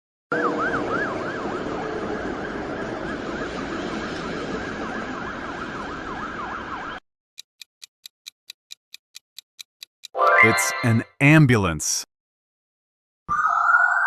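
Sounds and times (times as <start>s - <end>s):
ambulance siren yelping: 0.3s - 7.0s
clock-like ticking: 7.4s - 10.2s.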